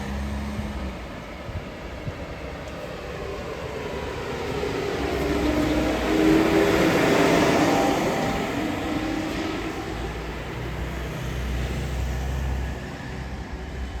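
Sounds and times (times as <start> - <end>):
bus engine hum: 0.0 - 3.4.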